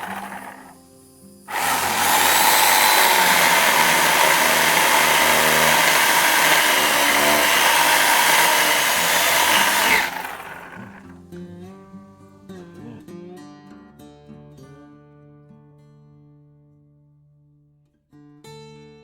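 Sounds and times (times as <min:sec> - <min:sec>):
chainsaw running: 0:00.0 - 0:11.1.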